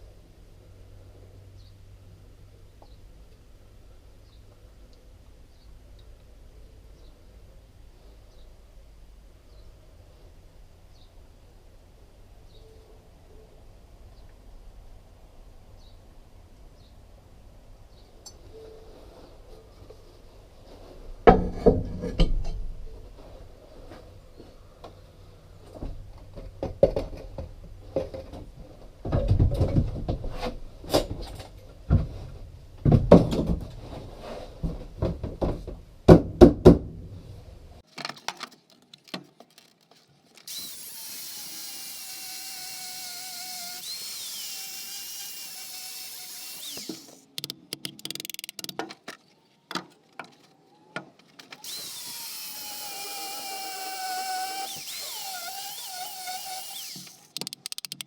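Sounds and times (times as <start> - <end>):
electric power tool whining: 40.4 - 48.7, 51.5 - 58.0.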